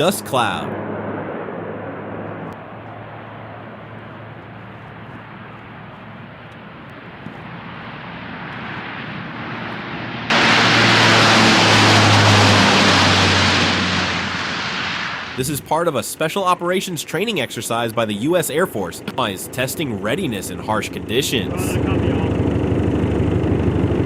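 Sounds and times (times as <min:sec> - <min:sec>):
turboprop engines droning: 0:00.0 - 0:24.0
rushing air: 0:07.5 - 0:15.9.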